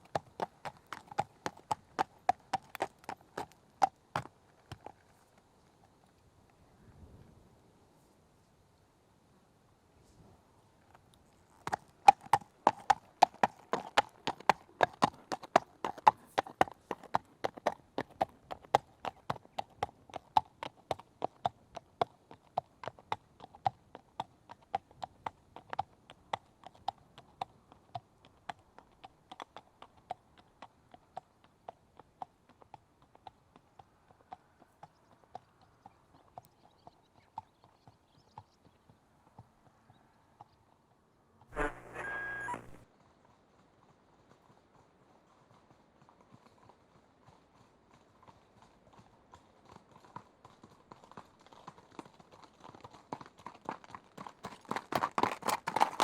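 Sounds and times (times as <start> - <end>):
horse hooves clip-clopping: 0.0 - 6.6, 10.8 - 40.6, 41.6 - 56.0.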